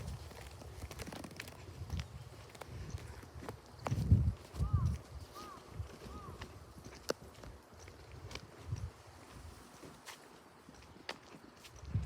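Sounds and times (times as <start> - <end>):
footsteps walking: 0.0 - 12.0.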